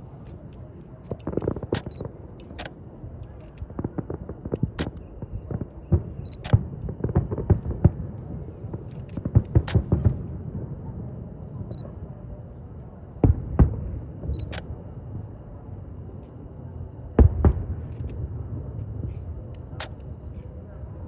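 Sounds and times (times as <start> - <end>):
fireworks bangs: 3.7 - 11.2, 17.0 - 19.3.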